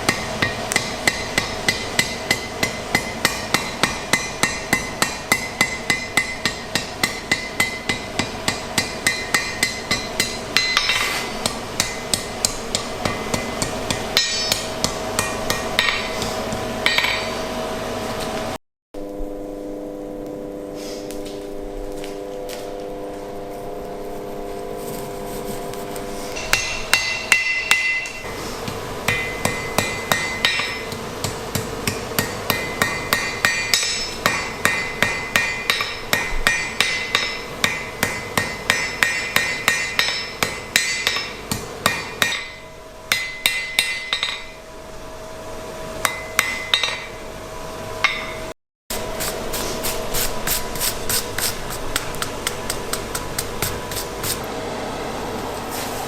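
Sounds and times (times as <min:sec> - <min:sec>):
hammer striking iron on anvil: 0:00.0 - 0:17.4, 0:26.3 - 0:44.7, 0:46.0 - 0:47.3, 0:48.0 - 0:48.5.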